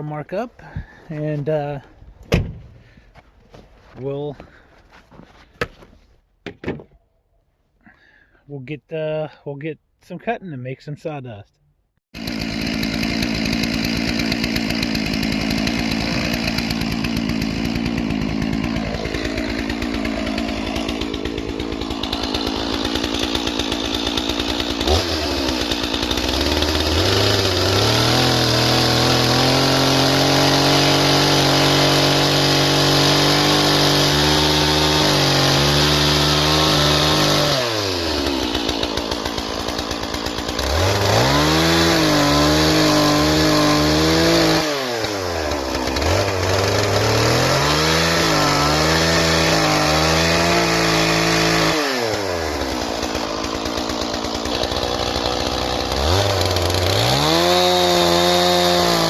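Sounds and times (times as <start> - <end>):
chainsaw revving and cutting logs: 0.0 - 2.0, 12.1 - 59.0
chainsaw idling: 12.2 - 59.0.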